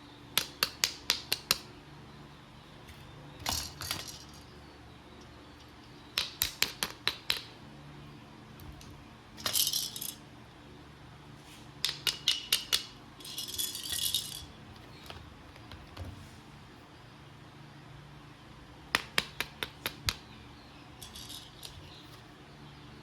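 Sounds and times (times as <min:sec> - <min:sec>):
toy rattling: 0:03.4 - 0:04.6, 0:08.6 - 0:10.2, 0:11.8 - 0:15.7, 0:21.0 - 0:22.0.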